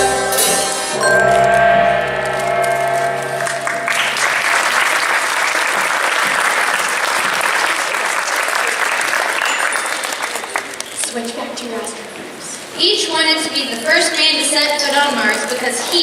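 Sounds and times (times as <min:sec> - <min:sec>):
audience applauding: 0:02.7 - 0:11.2.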